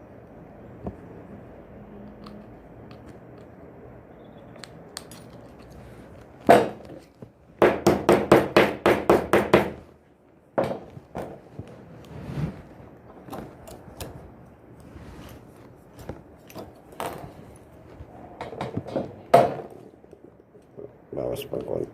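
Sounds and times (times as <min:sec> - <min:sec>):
hammer strikes: 0:07.6 - 0:09.8.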